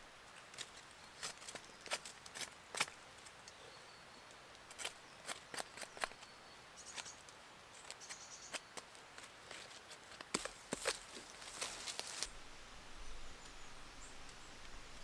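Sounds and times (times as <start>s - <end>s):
faint birdsong: 0.0s - 15.0s
footsteps crunching underfoot: 8.8s - 12.3s.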